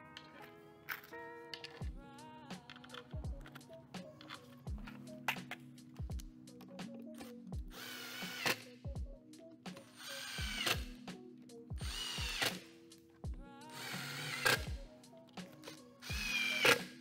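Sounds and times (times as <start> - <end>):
cordless drill driving screws: 7.7 - 8.7, 10.0 - 11.0, 11.9 - 12.6, 13.8 - 14.7, 16.1 - 17.0.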